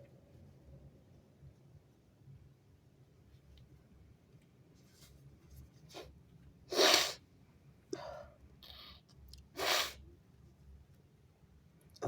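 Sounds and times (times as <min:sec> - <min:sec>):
person sneezing: 0:06.7 - 0:07.2, 0:09.6 - 0:10.0.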